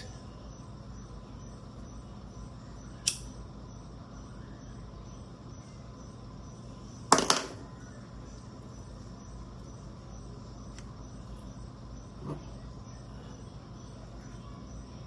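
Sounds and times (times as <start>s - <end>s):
lighter click: 3.0s - 3.3s.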